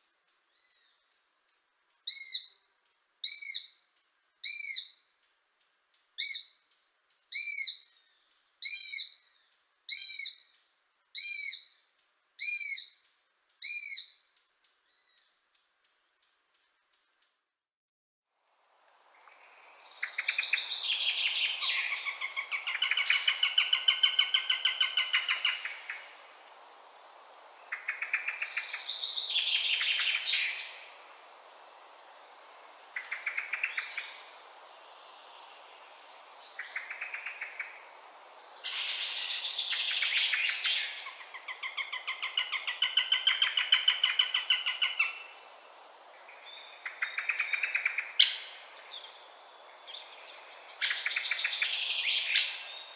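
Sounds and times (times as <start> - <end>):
hawk chattering calls: 21.6 - 26.0.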